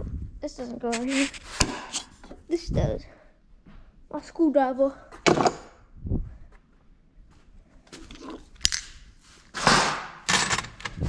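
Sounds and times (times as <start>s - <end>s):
tools scraping and clattering: 7.9s - 11.0s.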